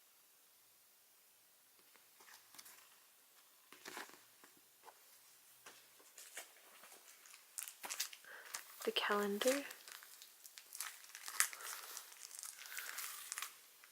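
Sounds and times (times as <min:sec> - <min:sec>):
packaging rustling and tapping: 0:05.6 - 0:13.6.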